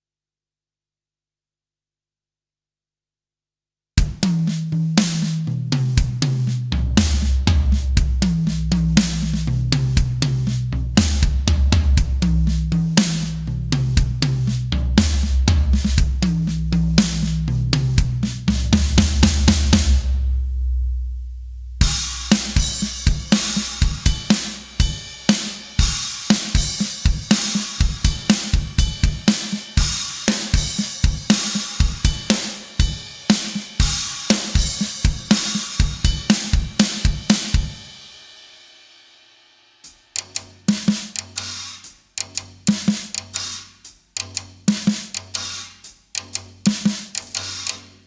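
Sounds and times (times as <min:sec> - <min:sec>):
acoustic drum kit grooves: 0:04.0 - 0:48.0
low bass line: 0:05.7 - 0:23.3.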